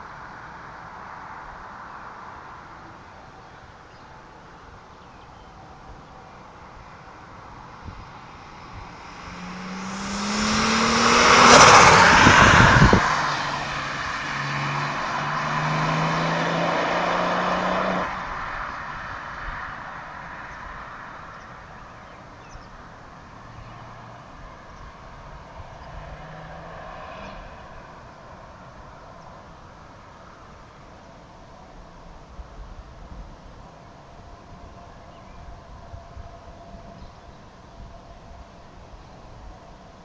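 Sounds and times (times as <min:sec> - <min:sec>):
car accelerating past: 0:07.7 - 0:21.6, 0:23.4 - 0:28.4.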